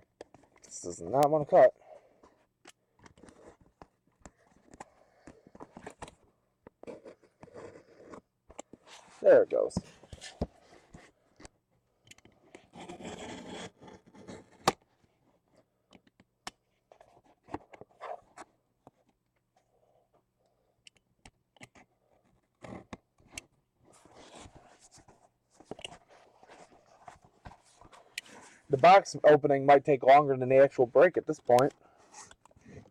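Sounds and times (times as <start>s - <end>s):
cutting open cardboard box: 12.6s - 14.8s.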